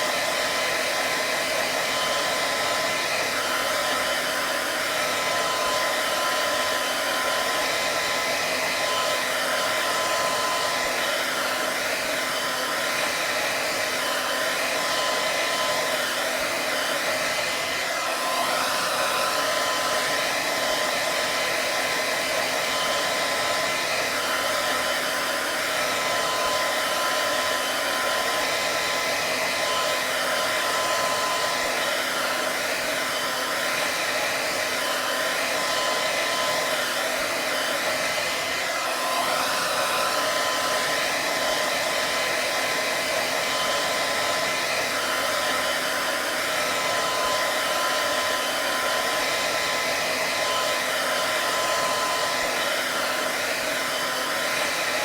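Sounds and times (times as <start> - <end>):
hair dryer running: 0.0 - 55.0.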